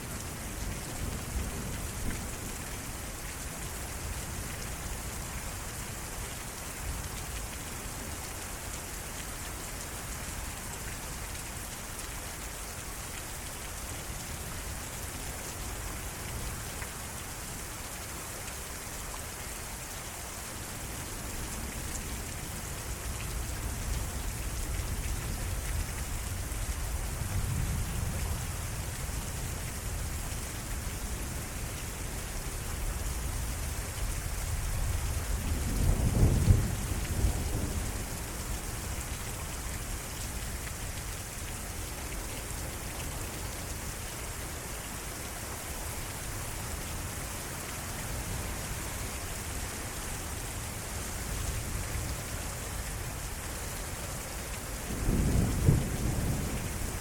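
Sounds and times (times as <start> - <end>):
heavy rain pouring: 0.0 - 57.0
low rumble of thunder: 22.9 - 30.2, 32.7 - 39.1, 54.8 - 57.0.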